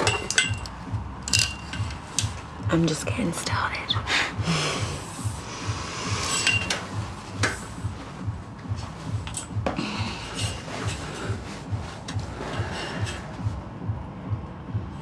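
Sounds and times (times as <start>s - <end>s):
handcuffs clinking and rattling: 0.0s - 2.4s, 9.2s - 9.6s
soft pulsing background music: 0.0s - 15.0s.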